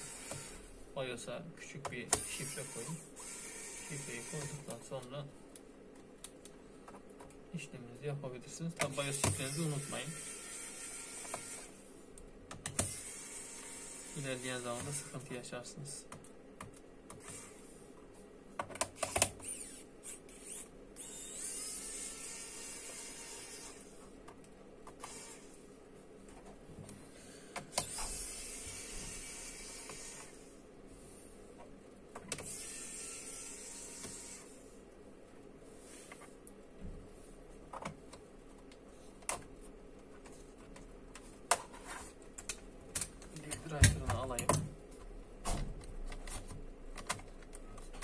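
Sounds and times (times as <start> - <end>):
electric screwdriver whirring: 2.2 - 4.8, 9.0 - 11.8, 12.8 - 15.2, 17.2 - 17.6, 19.0 - 24.0, 25.0 - 25.6, 27.7 - 30.5, 32.4 - 34.6.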